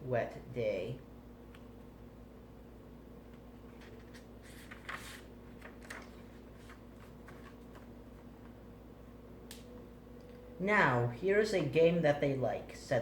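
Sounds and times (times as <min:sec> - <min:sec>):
low steady hum: 0:00.0 - 0:13.0
page turning: 0:03.6 - 0:08.5
paper rustling: 0:03.6 - 0:08.5.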